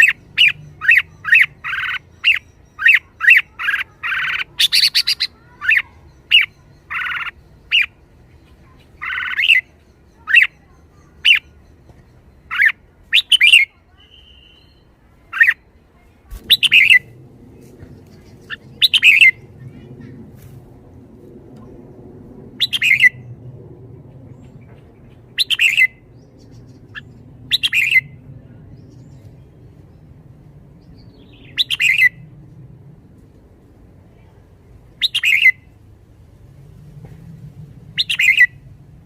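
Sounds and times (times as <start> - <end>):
bird chirping: 0.0 - 15.6, 16.4 - 17.2, 17.8 - 20.1, 22.6 - 23.3, 24.2 - 28.1, 30.8 - 32.2, 35.0 - 35.6, 38.0 - 38.6.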